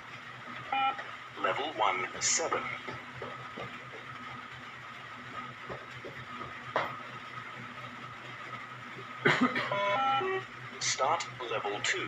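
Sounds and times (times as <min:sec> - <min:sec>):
faint taps: 0:02.8 - 0:04.4, 0:05.6 - 0:07.0.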